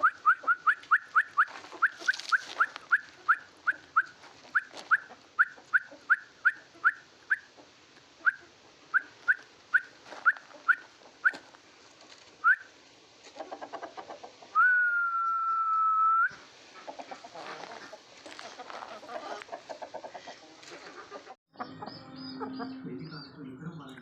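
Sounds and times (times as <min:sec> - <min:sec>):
soft clucking: 0:00.0 - 0:12.6, 0:13.2 - 0:14.6, 0:16.6 - 0:22.8
chicks peeping: 0:00.0 - 0:12.7, 0:16.7 - 0:24.0
long steady whistle: 0:14.6 - 0:16.4.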